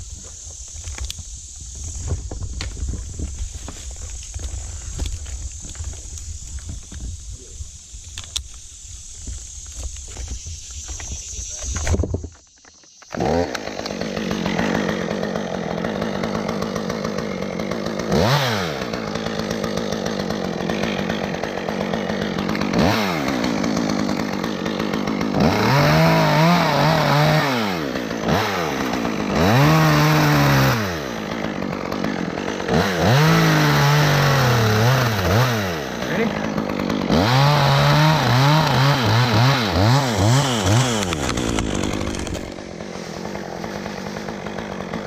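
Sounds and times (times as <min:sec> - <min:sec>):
chainsaw revving: 0:13.0 - 0:45.0.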